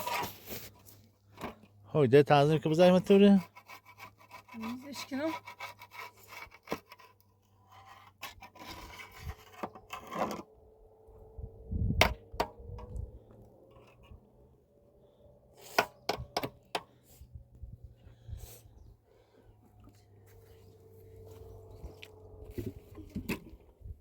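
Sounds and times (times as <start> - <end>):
rubbing and scraping by hand: 0.0 - 1.6, 2.4 - 10.6.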